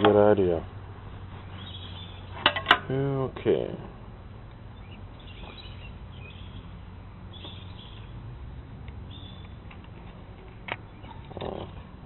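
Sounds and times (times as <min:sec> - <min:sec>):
steady low rumble: 0:00.0 - 0:12.0
faint bird chirps: 0:01.4 - 0:02.4, 0:04.7 - 0:08.1.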